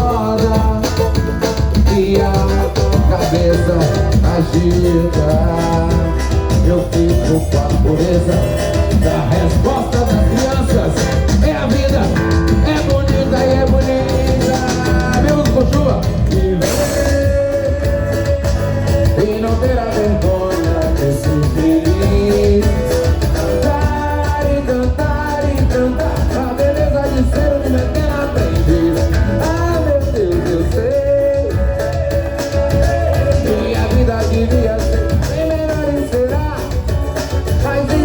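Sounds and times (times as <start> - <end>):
music with a steady beat: 0.0 - 38.0.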